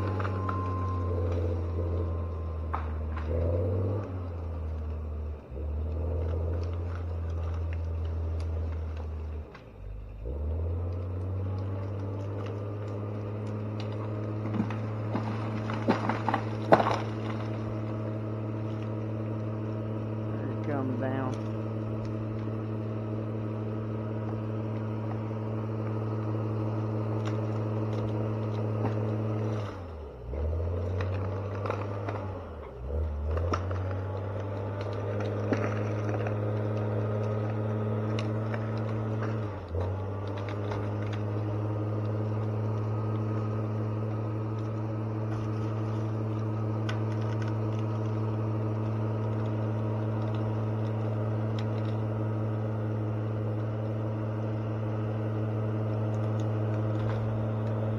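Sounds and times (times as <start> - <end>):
heavy machine engine labouring: 0.0 - 57.9
sharp knocks and cracks: 10.9 - 19.8, 24.1 - 29.8, 30.5 - 57.9.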